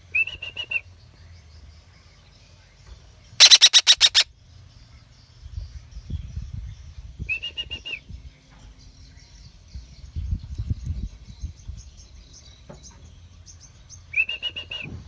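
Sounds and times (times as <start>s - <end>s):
parakeet chirping: 3.4s - 4.2s.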